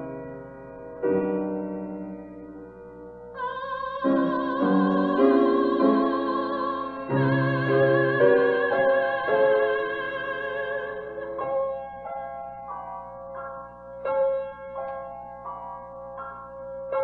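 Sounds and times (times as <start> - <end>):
piano chords: 0.0 - 17.0
singer with wide vibrato: 3.4 - 12.0.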